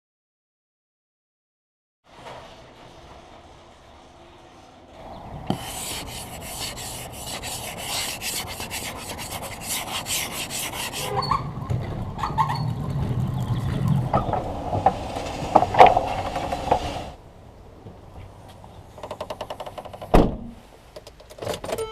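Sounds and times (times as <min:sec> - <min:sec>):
rhythmic scraping and rubbing: 0:02.1 - 0:17.2
handling noise: 0:04.9 - 0:17.2.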